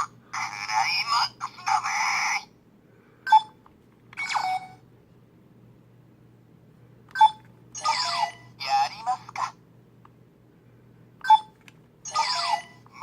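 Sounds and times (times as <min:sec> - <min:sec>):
toy sound effect with falling sweep: 0:04.2 - 0:04.8, 0:07.8 - 0:08.4, 0:12.1 - 0:12.8
toy button beep: 0:07.1 - 0:08.4, 0:11.2 - 0:11.5.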